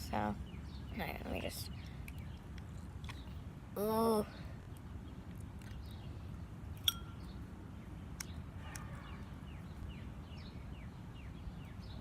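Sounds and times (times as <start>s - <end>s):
bird chirping: 0.0s - 3.5s, 4.6s - 12.0s
outdoor background rumble: 0.0s - 12.0s
sharp clink: 6.8s - 7.3s.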